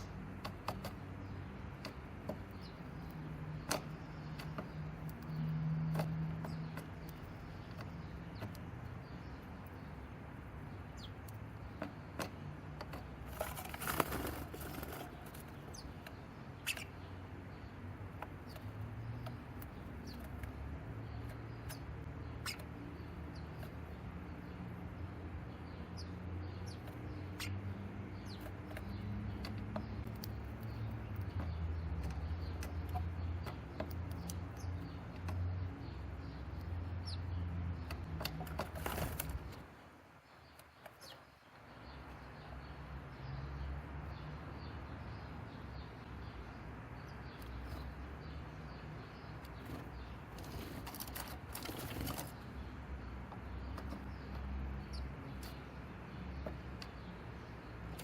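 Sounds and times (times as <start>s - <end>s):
bird wings fluttering: 13.3s - 15.2s.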